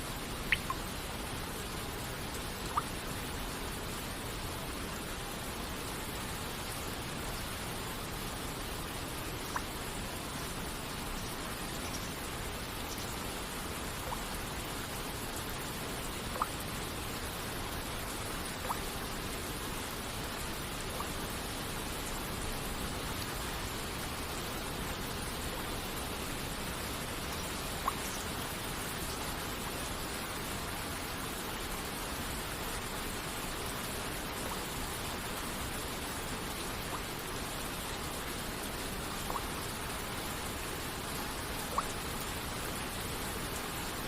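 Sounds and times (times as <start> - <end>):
waterfall: 0.0 - 44.0
water droplets dripping: 0.5 - 0.9, 2.6 - 3.0, 13.9 - 14.3, 18.6 - 18.9, 27.4 - 28.3, 39.2 - 39.7, 41.6 - 42.1.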